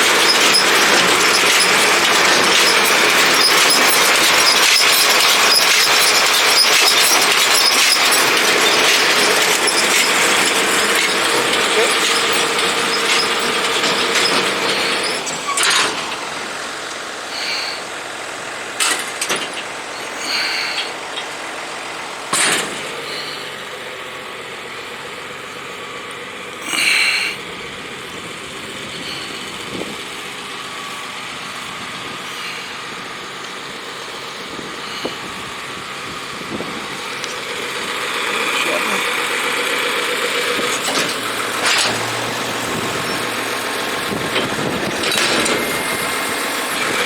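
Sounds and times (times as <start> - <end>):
short metal clanks: 0.0 - 16.4, 18.8 - 21.3, 22.3 - 23.4, 40.5 - 46.0
baler mechanical clatter: 0.0 - 26.6, 27.4 - 47.0.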